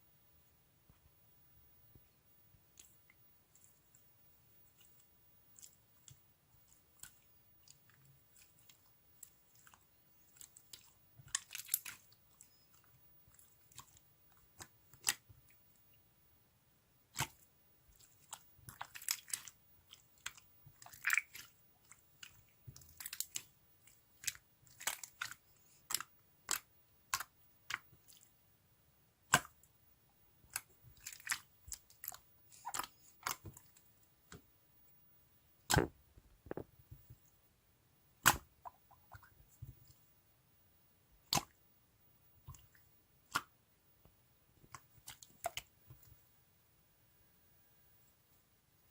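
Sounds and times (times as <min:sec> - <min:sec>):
slime squishing sticky clicks: 0:38.2 - 0:38.5.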